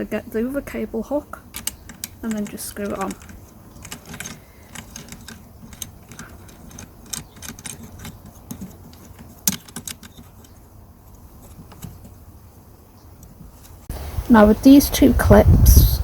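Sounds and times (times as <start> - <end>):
plastic and metal clicks: 1.5 - 10.6.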